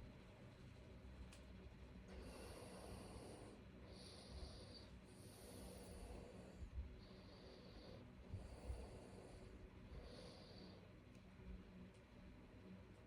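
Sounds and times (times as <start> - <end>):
sleeping person breathing: 2.1 - 11.1.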